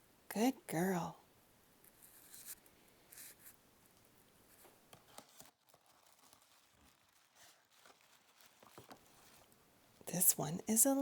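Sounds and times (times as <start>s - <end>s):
paper crinkling: 4.5s - 9.6s.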